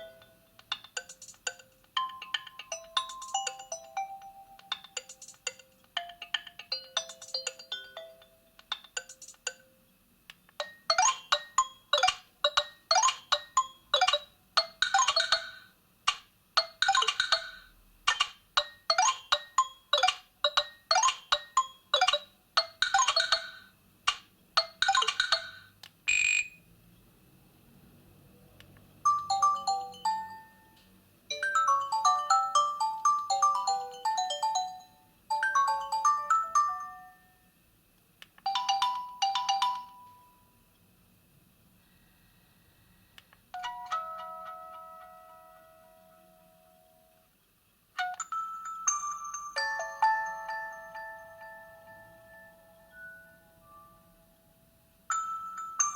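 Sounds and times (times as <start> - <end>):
ringtone of quick stepping notes: 1.0 - 8.4, 10.6 - 15.6, 16.6 - 23.6, 29.1 - 37.4, 48.0 - 54.2, 55.1 - 55.9
phone ringtone chiming notes: 2.0 - 8.4, 29.1 - 37.4, 38.5 - 40.5, 48.1 - 54.4, 55.1 - 55.9.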